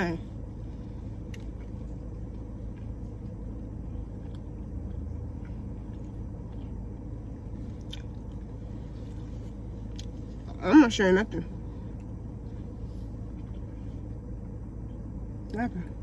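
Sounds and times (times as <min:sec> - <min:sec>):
car interior rumble: 0:00.0 - 0:16.0
chewing food: 0:00.5 - 0:10.6.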